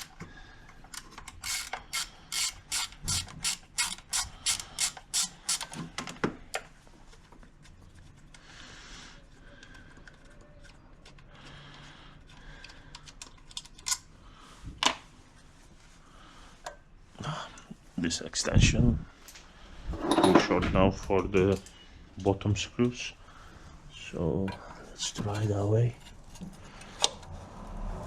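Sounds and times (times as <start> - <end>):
socket ratchet clicking: 1.0 - 5.7
faint handling sounds: 5.0 - 27.7.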